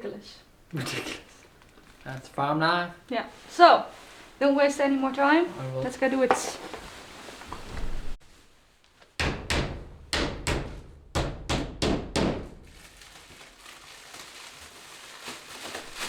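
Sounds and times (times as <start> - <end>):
hammer driving nails into wood: 9.2 - 12.5.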